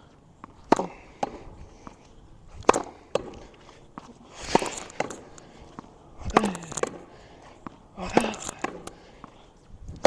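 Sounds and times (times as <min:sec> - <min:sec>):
racket striking tennis ball: 0:00.6 - 0:02.0, 0:02.6 - 0:03.5, 0:04.4 - 0:09.4.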